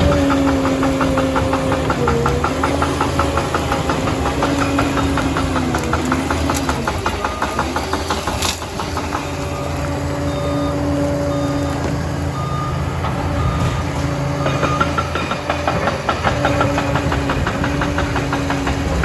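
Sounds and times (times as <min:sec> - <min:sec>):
rapid even clicking: 0:00.0 - 0:09.4
bulldozer engine running: 0:00.0 - 0:19.0
reversing alarm beeps: 0:07.0 - 0:08.2, 0:09.0 - 0:15.9.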